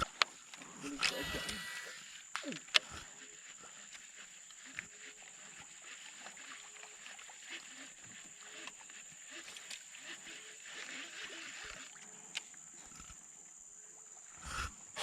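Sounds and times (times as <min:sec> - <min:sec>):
high-pitched insect drone: 0:00.0 - 0:15.0
low animal calls: 0:00.6 - 0:03.8, 0:14.3 - 0:15.0.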